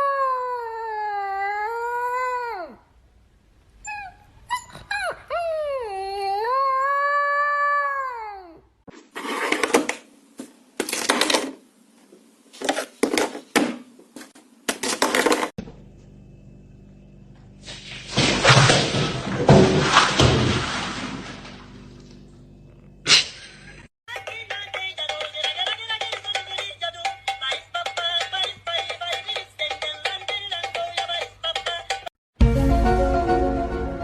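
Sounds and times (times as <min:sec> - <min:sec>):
dog howling and whining: 0:00.0 - 0:02.8, 0:03.8 - 0:08.6.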